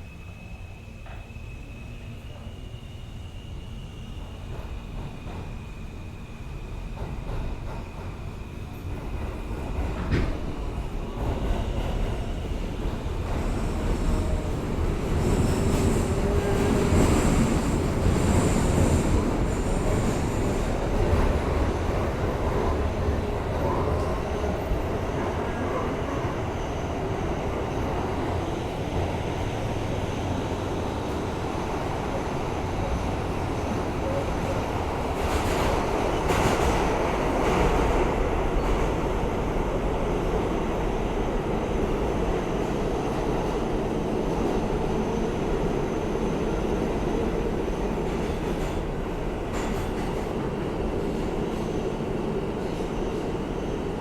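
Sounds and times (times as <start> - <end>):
train rumbling on rails: 0.0 - 54.0.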